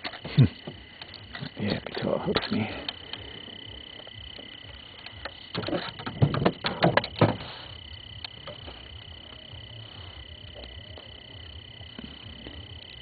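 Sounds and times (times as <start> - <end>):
knocks and thumps against boat: 5.5 - 7.5.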